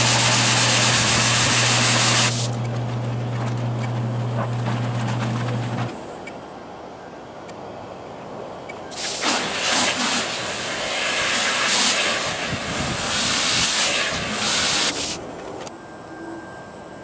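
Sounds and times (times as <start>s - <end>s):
sped-up washing machine hiss: 0.0s - 2.9s, 8.9s - 15.6s.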